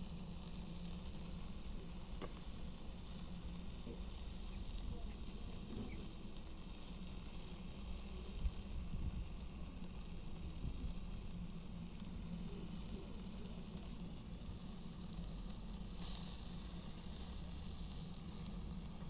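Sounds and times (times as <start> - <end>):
food sizzling on a grill: 0.0 - 19.0.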